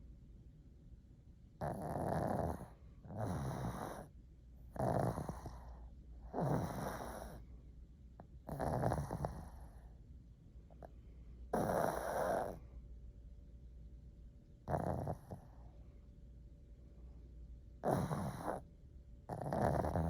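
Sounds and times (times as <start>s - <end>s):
dog breathing: 1.6s - 4.1s, 4.8s - 7.4s, 11.6s - 12.6s, 17.8s - 18.6s, 19.3s - 20.0s
dog snoring: 1.6s - 7.4s, 8.4s - 9.9s, 11.5s - 12.6s, 14.6s - 15.7s, 17.8s - 20.0s.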